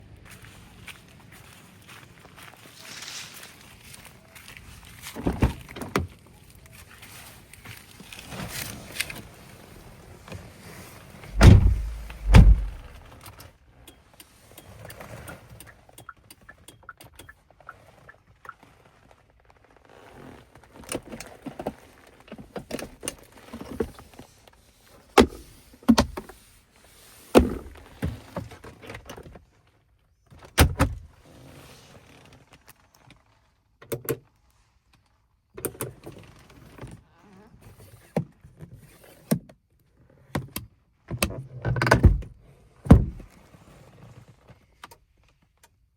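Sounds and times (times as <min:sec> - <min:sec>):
clicks and knocks of car switches: 0:11.3 - 0:13.0
heavy car door thuds: 0:11.3 - 0:13.0, 0:42.9 - 0:43.2.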